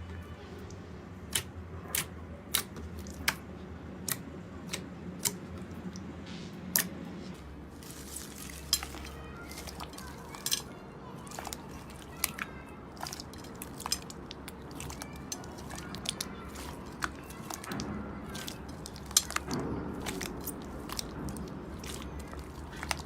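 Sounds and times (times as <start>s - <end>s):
slime squishing: 0.6s - 23.0s
slime crackling and popping: 7.7s - 23.0s.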